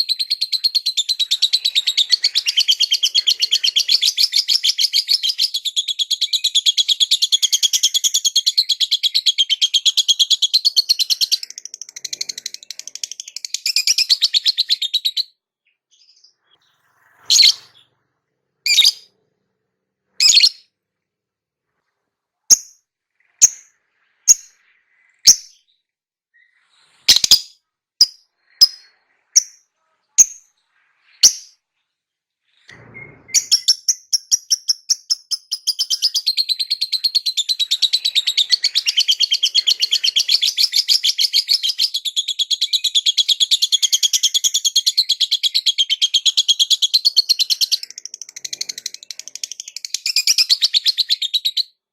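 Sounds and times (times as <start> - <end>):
lovebird sharp chirps: 16.0 - 17.9, 18.7 - 19.1, 20.2 - 20.7, 22.5 - 24.6, 25.2 - 25.8, 26.4 - 31.6, 32.7 - 51.8
lovebird chattering trill: 17.3 - 17.7, 18.7 - 19.1, 20.2 - 20.6, 22.5 - 22.8, 23.4 - 23.7, 27.1 - 29.6, 33.4 - 51.6.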